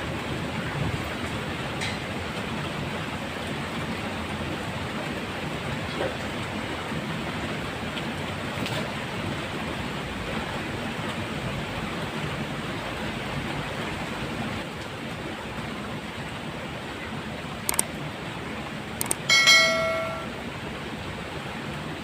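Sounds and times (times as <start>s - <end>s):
rain falling: 0.0s - 22.0s.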